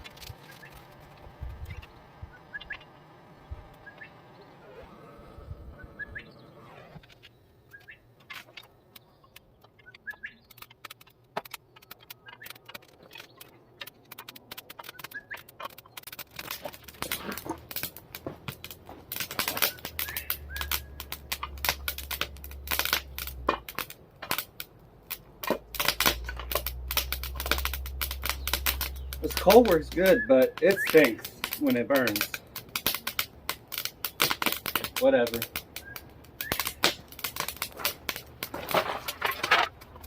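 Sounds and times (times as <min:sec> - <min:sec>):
low steady rumble: 0:00.0 - 0:06.6
burning coal crackling and popping: 0:00.0 - 0:40.0.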